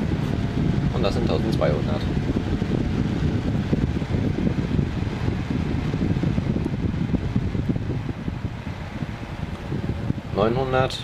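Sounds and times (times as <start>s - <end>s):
case fan rushing hum: 0.0s - 11.0s.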